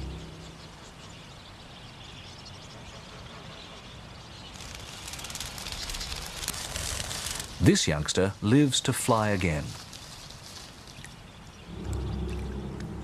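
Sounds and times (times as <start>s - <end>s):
faint outdoor ambience: 0.0s - 13.0s
bird flapping in water: 4.5s - 7.6s, 9.6s - 11.4s.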